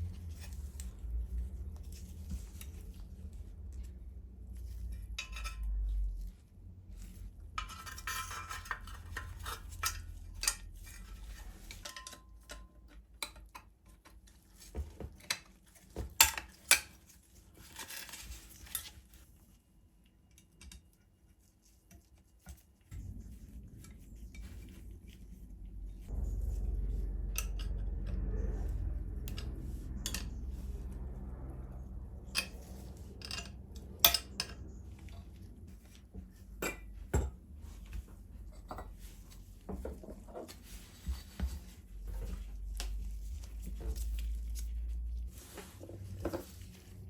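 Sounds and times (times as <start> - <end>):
metal parts clinking and scraping: 7.6 - 12.8
low hum: 22.9 - 47.0.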